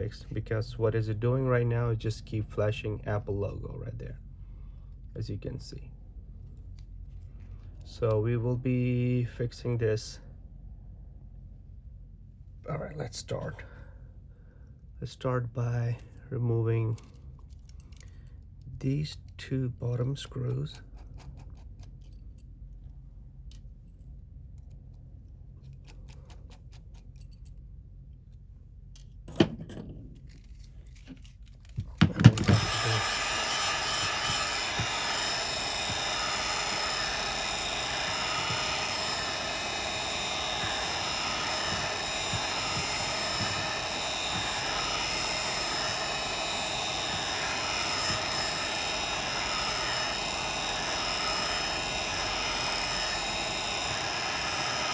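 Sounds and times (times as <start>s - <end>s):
heat gun blowing: 31.8s - 54.9s.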